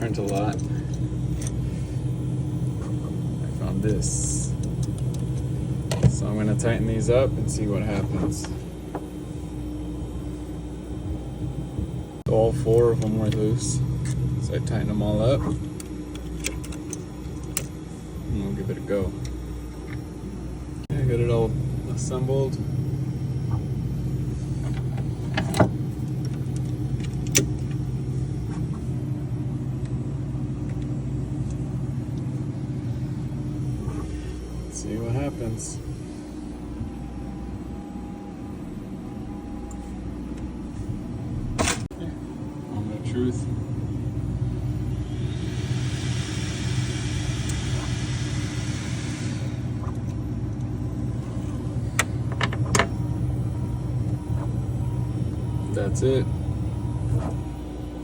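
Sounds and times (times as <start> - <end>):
printer fans humming: 0.0 - 58.0
hiss: 45.0 - 49.8.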